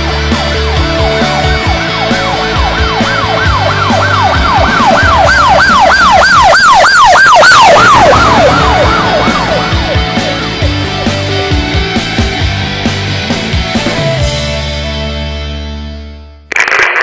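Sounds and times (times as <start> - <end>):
music: 0.0 - 16.5
emergency siren yelping: 0.8 - 10.8.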